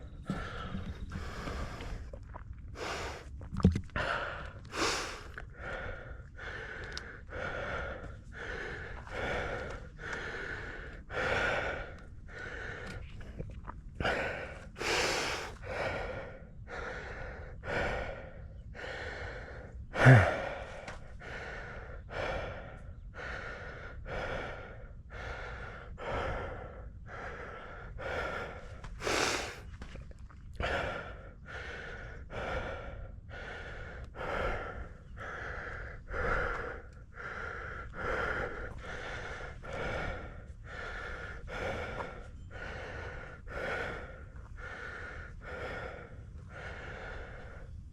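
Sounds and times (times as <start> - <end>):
person panting: 0.3 - 2.1, 2.8 - 3.3, 4.0 - 13.0, 14.0 - 29.7, 30.6 - 47.8.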